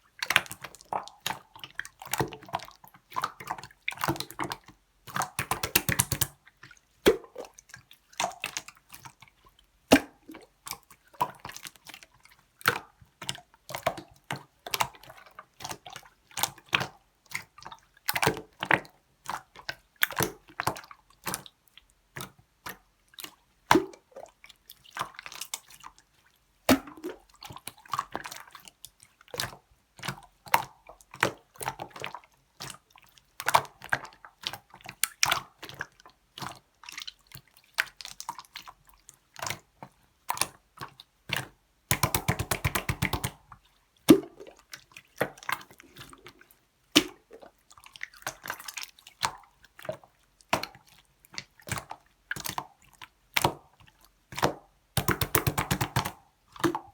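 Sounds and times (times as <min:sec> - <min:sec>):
wet slime squishes: 0:00.2 - 0:21.5, 0:22.2 - 0:56.9
clicking pops of slime: 0:41.9 - 0:43.4, 0:55.0 - 0:56.8.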